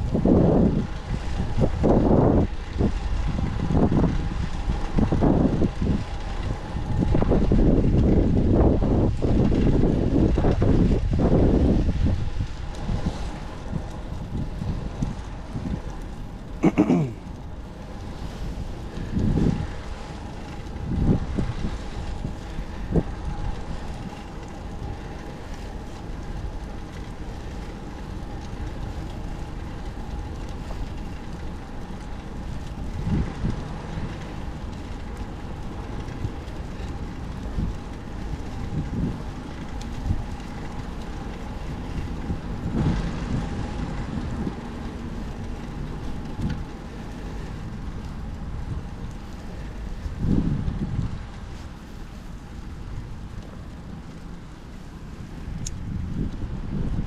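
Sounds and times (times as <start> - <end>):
bicycle road rumble: 0.0 - 57.0
wind buffeting microphone: 0.0 - 57.0.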